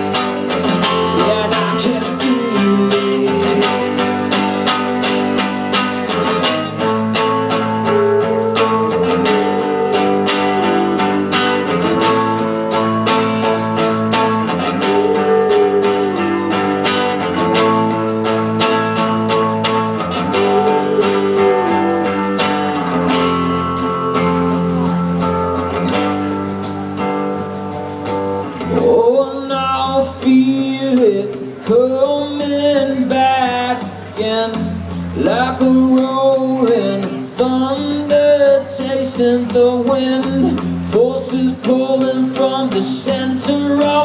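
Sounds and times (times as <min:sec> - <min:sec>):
bass: 0:00.0 - 0:44.0
bending melodic guitar line: 0:00.0 - 0:44.0
strummed guitar chords: 0:00.0 - 0:44.0.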